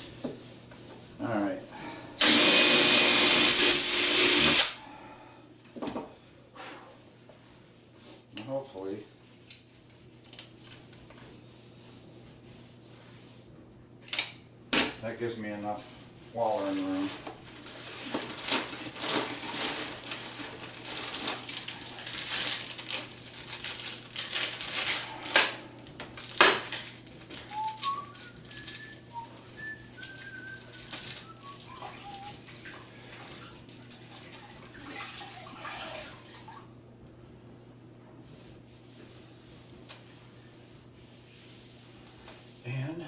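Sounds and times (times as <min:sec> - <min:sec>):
person whistling: 0:27.4 - 0:32.4.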